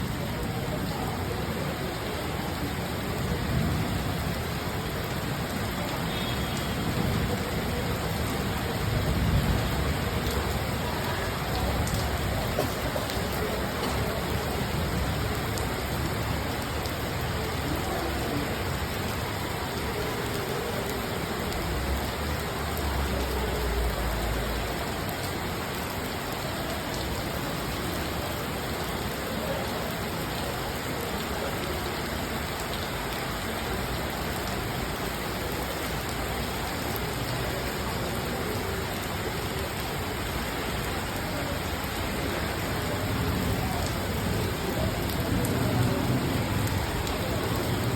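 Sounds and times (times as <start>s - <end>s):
rain pattering: 0.0s - 47.9s.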